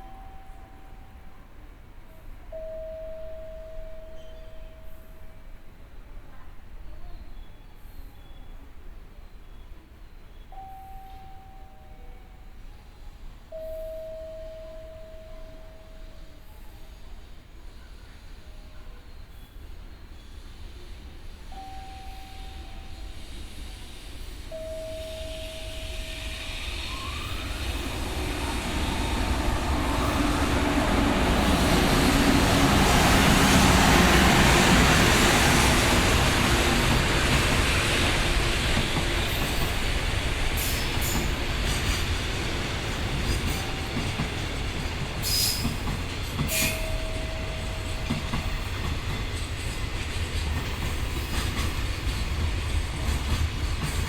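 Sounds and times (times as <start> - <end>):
freight train rumble: 0.0 - 54.0
wagons clickety-clack over rail joints: 35.4 - 54.0.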